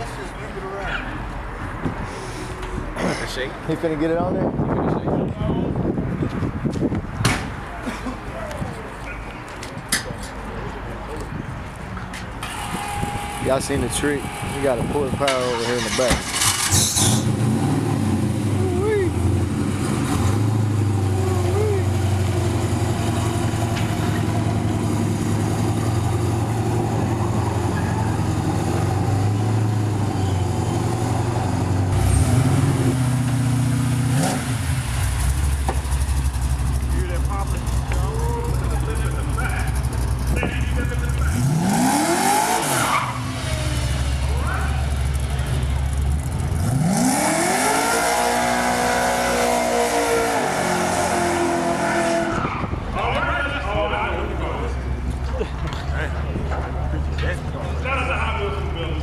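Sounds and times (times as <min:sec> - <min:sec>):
car engine accelerating hard: 0:15.6 - 0:52.8
car engine idling: 0:33.0 - 0:41.5, 0:43.2 - 0:46.7
quick rising engine rev: 0:41.2 - 0:44.3, 0:46.6 - 0:52.7.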